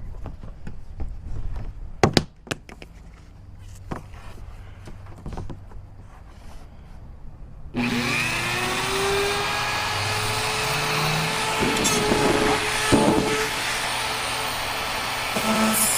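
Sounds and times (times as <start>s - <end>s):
cut-off disc grinding metal screw: 7.8s - 14.3s, 15.1s - 15.9s
rotary tool whine: 7.8s - 15.9s.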